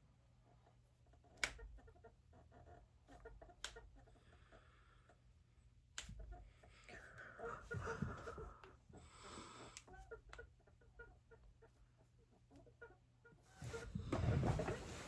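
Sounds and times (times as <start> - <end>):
faint joint clicks: 1.3 - 1.7.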